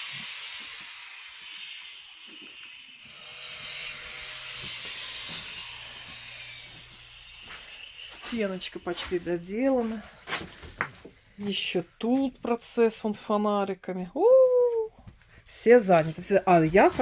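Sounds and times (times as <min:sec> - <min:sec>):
power tool hissing: 0:00.0 - 0:11.4.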